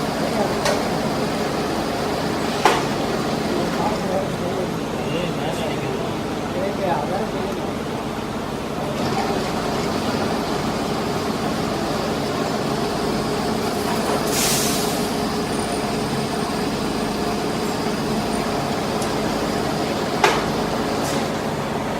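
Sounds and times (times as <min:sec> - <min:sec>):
high machine whine: 0:00.0 - 0:21.9
lathe running: 0:00.0 - 0:21.9
short burst of hiss: 0:14.2 - 0:15.1.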